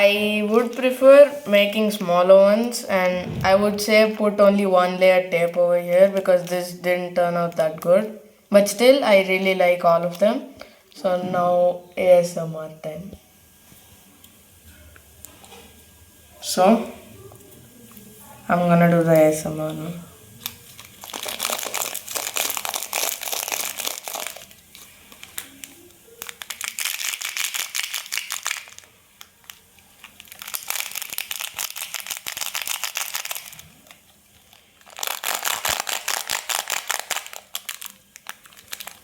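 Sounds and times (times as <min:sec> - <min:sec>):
foam fidget toy crinkling and clicking: 0:20.2 - 0:39.0.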